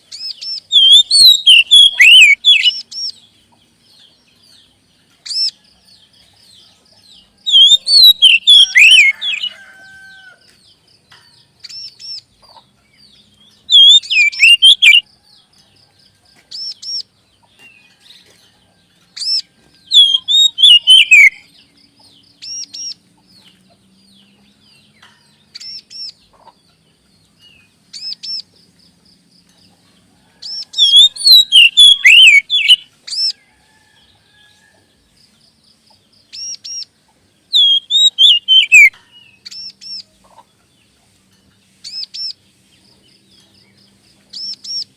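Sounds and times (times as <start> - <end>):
bird whistled notes: 0.8 - 2.8, 7.5 - 9.5, 13.7 - 15.0, 20.0 - 21.5, 30.8 - 32.9, 37.6 - 39.0
songbird warbling harsh phrases: 0.8 - 2.8, 7.5 - 9.5, 30.8 - 32.8.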